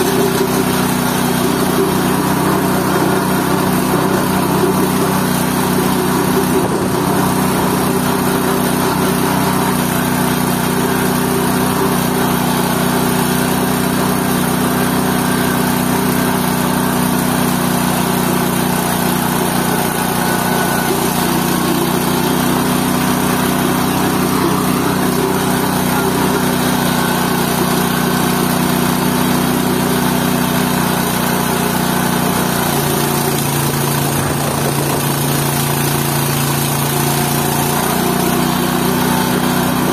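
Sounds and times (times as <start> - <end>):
waste pulping machine motor running: 0.0 - 39.9.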